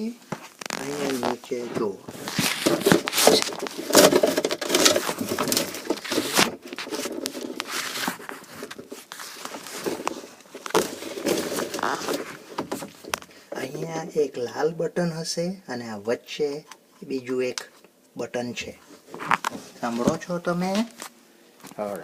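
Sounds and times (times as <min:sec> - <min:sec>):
rustling and crinkling of bags: 0:00.1 - 0:14.0
items knocking: 0:00.3 - 0:14.0.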